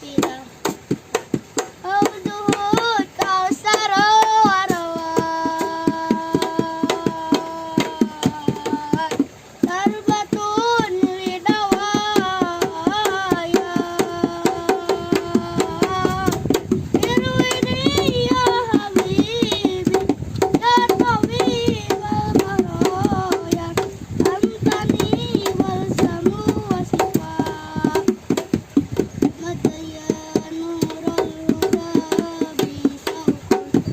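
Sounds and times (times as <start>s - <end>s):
child singing ornamented melody: 0.0s - 33.9s
hand percussion beat: 0.0s - 33.9s.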